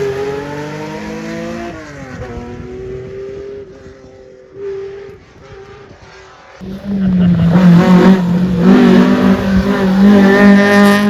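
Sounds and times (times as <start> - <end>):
rally car accelerating: 0.0 - 11.0
rally car arriving loudly: 3.6 - 11.0.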